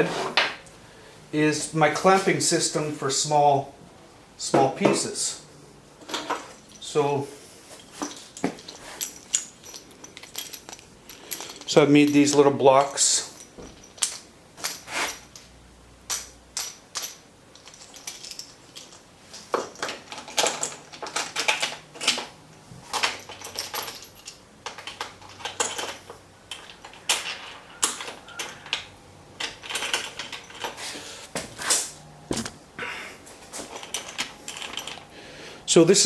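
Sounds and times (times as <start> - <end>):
sharp clicks and knocks of parts: 8.0 - 30.8, 33.6 - 35.1.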